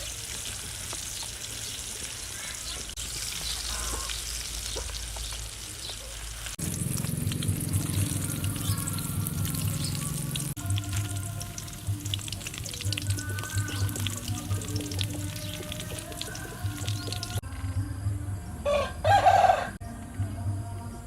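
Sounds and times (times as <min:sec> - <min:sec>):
food sizzling in a pan: 0:00.0 - 0:17.4
background music with low notes: 0:06.6 - 0:21.0.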